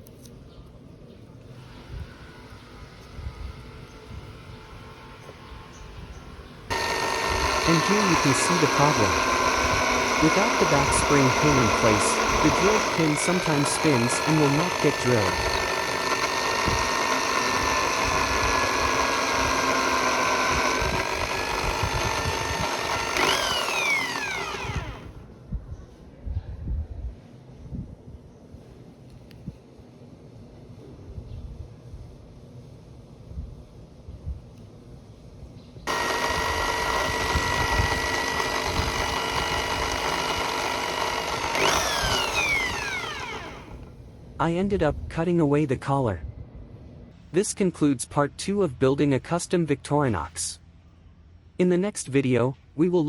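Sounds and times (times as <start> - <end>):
small electric drill whining: 1.5 - 6.0, 6.7 - 25.2, 35.9 - 44.0
power tool motor running: 1.5 - 25.2, 35.9 - 44.0.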